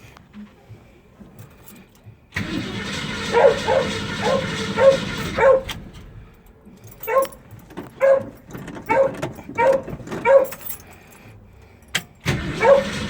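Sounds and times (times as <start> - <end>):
car starter cranking engine: 2.3 - 10.7, 11.9 - 13.0
dog barking: 3.2 - 5.7, 7.1 - 7.4, 8.0 - 10.6, 12.6 - 13.0.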